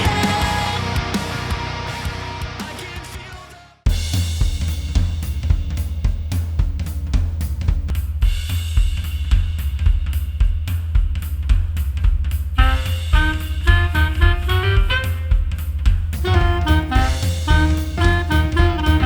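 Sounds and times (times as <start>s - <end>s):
jazz drum kit and bass: 0.0s - 3.3s, 3.9s - 19.0s
rock song: 0.0s - 5.9s, 12.6s - 19.0s.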